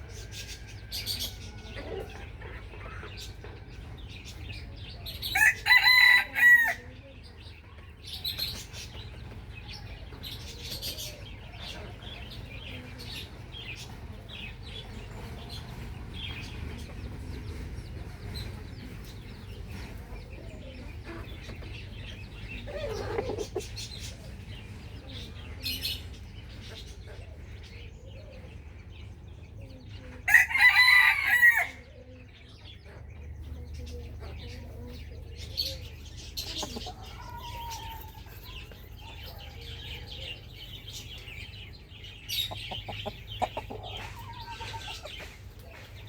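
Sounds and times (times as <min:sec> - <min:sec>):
chickens clucking: 0:00.0 - 0:46.0
rooster crowing: 0:05.4 - 0:06.8, 0:30.3 - 0:31.8.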